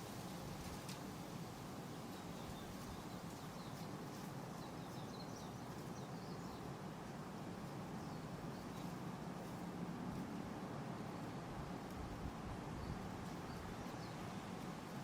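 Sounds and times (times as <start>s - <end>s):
leaves and branches rustling: 0.0s - 15.0s
wind through trees: 0.0s - 15.0s
small birds chirping: 1.9s - 6.8s, 12.8s - 14.5s.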